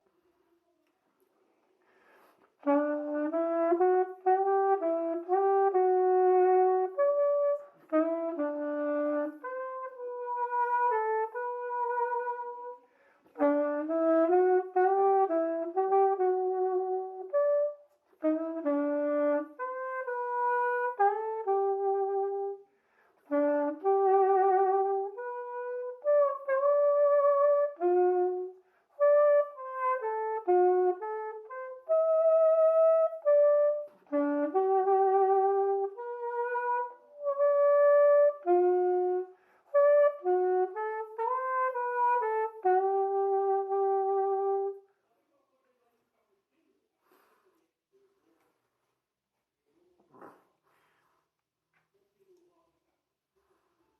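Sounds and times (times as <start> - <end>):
saxophone playing slow melody: 2.5 - 44.9.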